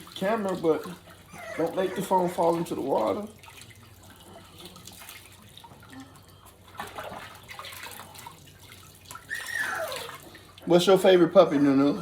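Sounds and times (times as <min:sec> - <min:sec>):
water splashing in a tub: 0:00.0 - 0:12.0.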